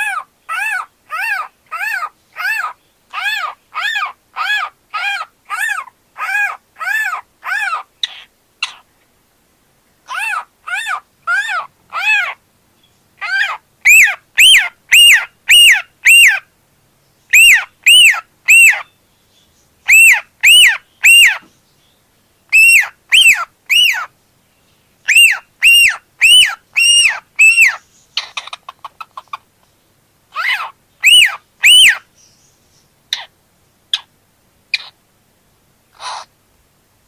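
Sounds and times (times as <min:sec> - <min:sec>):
cockatiel chirping: 0:00.0 - 0:08.9, 0:10.1 - 0:12.4, 0:13.2 - 0:16.5, 0:17.3 - 0:18.9, 0:19.8 - 0:21.5, 0:22.5 - 0:24.1, 0:25.0 - 0:29.4, 0:30.4 - 0:32.1, 0:33.1 - 0:33.3, 0:34.7 - 0:35.0.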